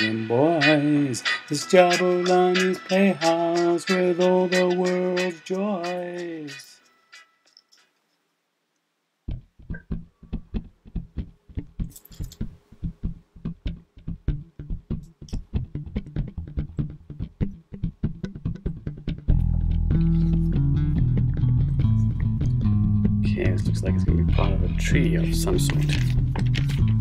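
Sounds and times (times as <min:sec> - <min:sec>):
plucked notes: 0:00.0 - 0:06.7, 0:12.9 - 0:27.0
fuller steady music: 0:00.0 - 0:07.4, 0:13.5 - 0:27.0.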